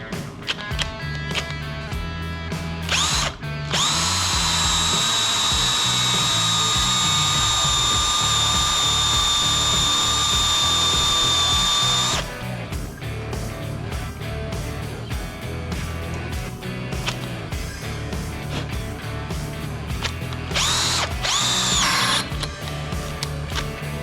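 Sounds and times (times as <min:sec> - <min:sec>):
cordless drill whining: 0:02.9 - 0:12.4, 0:20.5 - 0:23.7.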